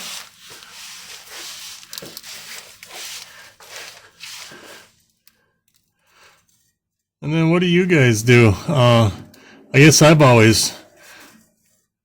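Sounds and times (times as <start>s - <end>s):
cloth rag wiping metal: 0.0s - 4.8s.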